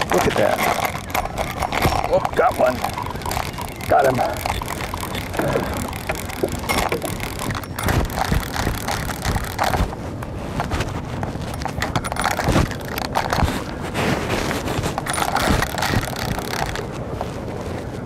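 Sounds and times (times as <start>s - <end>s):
fishing reel gears clicking: 0.0s - 9.8s, 15.0s - 16.8s.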